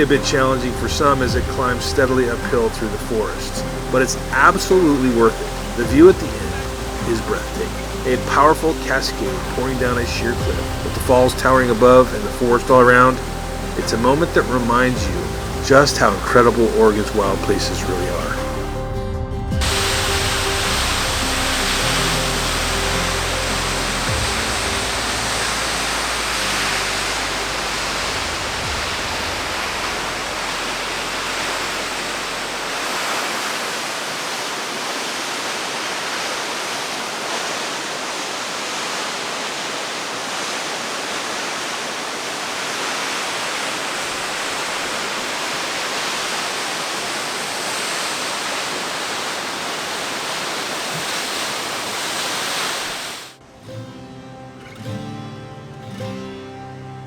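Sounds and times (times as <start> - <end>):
waterfall roaring: 0.0 - 18.8, 19.5 - 53.4
low background music: 0.0 - 33.2.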